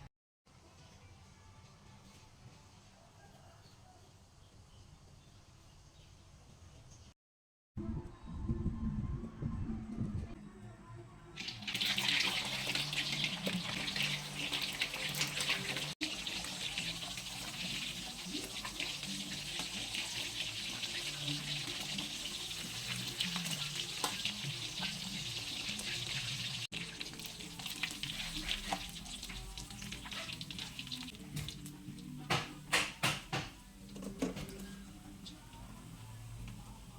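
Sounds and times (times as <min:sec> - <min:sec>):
fish sizzling in hot oil: 0:11.4 - 0:31.6.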